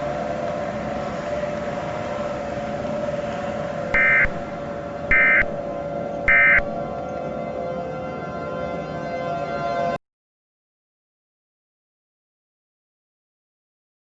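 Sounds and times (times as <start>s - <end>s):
two-tone drone: 0.0s - 10.0s
screeching data tone bursts: 5.1s - 5.6s, 6.3s - 6.8s.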